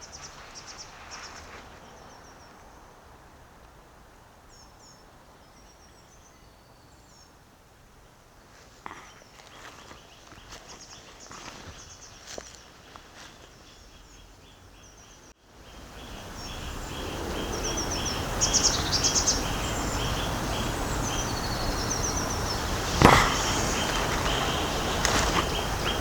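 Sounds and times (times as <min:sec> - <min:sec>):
background hiss: 0:00.0 - 0:26.0
bird chirps and trills: 0:13.6 - 0:26.0
sharp knock: 0:23.0 - 0:25.5.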